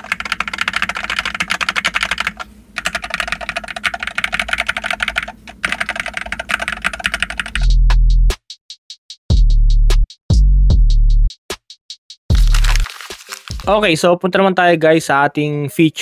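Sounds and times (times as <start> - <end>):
keyboard typing clicks: 0.0 - 7.6
loud music with heavy bass: 12.3 - 12.8.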